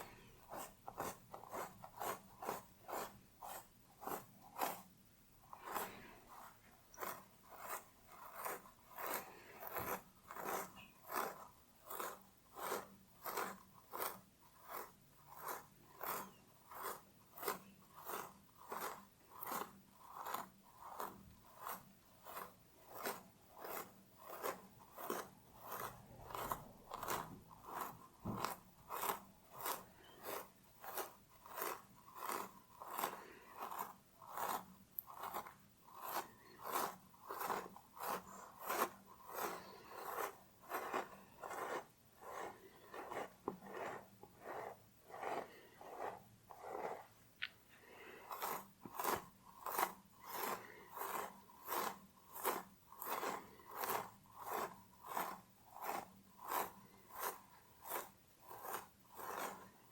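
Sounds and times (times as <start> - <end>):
fingernails scratching scalp: 0.0 - 47.2, 47.8 - 59.9.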